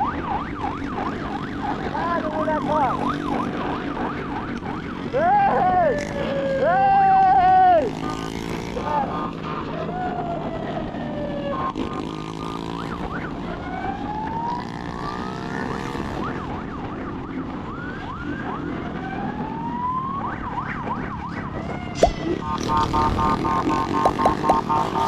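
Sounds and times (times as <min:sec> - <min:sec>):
motorcycle siren wailing and yelping: 0:00.0 - 0:25.0
motorcycle engine running: 0:21.5 - 0:25.0.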